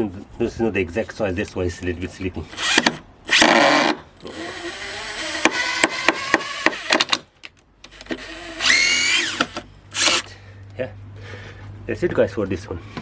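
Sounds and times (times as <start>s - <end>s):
impact driver driving screw into wood: 2.6s - 7.3s, 7.9s - 10.3s.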